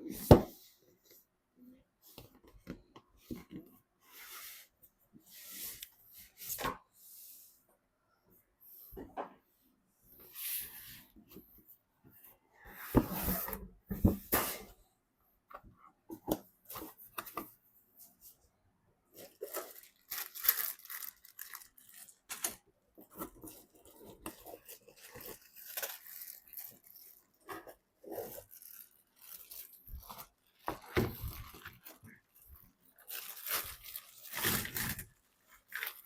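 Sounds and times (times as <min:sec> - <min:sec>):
plastic scraping and rustling: 0:19.2 - 0:36.0.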